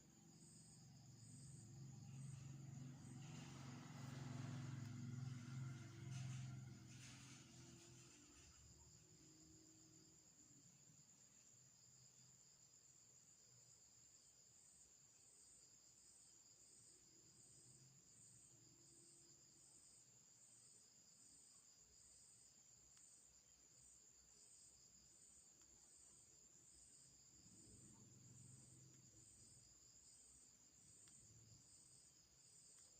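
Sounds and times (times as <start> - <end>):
faint high-pitched chirring: 0.0 - 12.4, 25.1 - 32.9.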